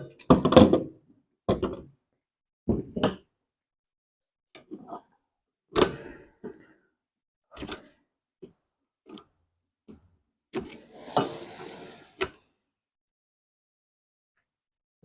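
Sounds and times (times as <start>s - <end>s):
metal scrape: 10.8s - 12.2s.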